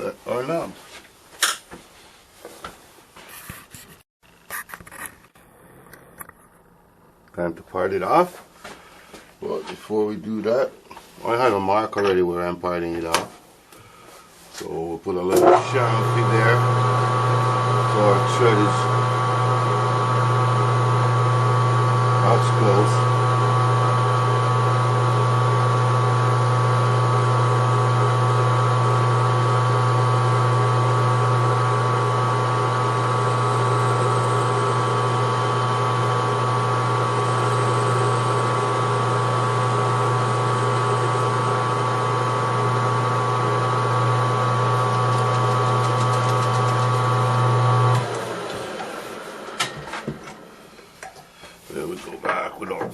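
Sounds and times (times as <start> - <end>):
lathe motor hum: 15.4 - 49.6.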